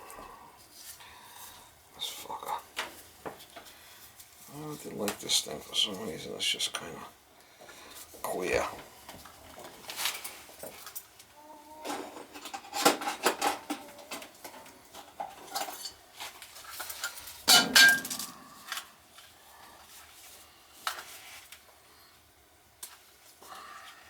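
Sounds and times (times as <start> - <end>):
metal tools clinking and clattering: 16.7 - 18.5.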